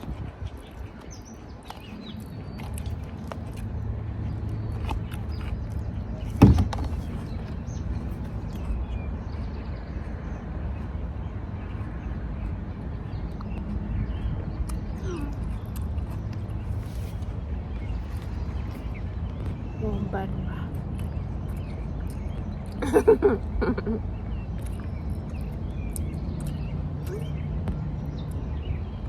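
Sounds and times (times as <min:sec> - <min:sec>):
faint birds chirping: 0:00.0 - 0:29.0
steady low rumble: 0:00.0 - 0:29.0.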